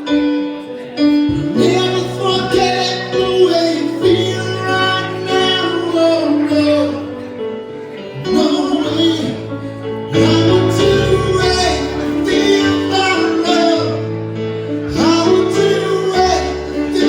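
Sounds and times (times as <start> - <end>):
person singing: 0.0 - 17.0
live band playing: 6.5 - 17.0.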